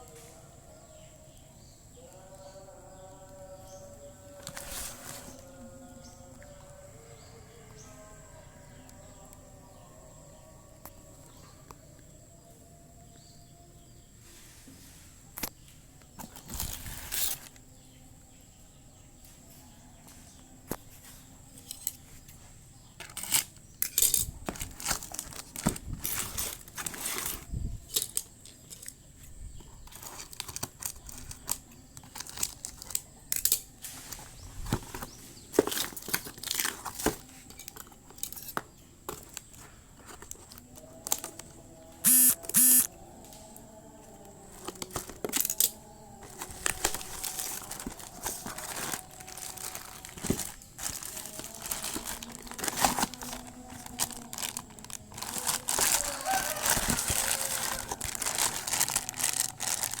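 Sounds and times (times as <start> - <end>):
packaging crinkling and tearing: 24.4 - 28.1, 29.9 - 38.5, 44.6 - 60.0
short loud bursts: 42.0 - 42.9.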